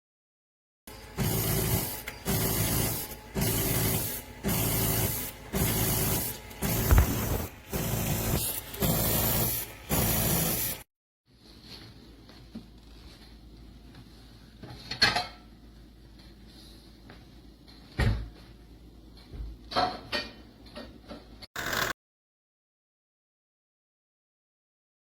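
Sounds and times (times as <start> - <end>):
espresso machine pulsing hiss: 1.2 - 10.8.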